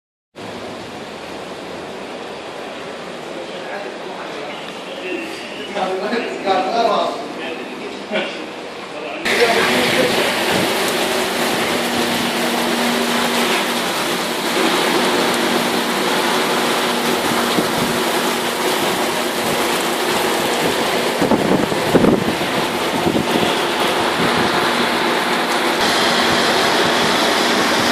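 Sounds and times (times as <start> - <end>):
heavy rain pouring: 0.4 - 27.9.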